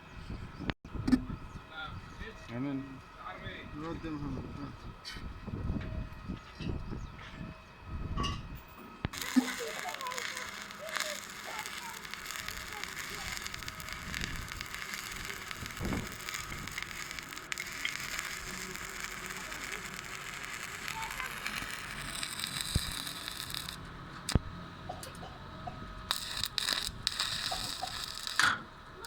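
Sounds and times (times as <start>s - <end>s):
welding arc crackling and hissing: 9.1s - 29.0s.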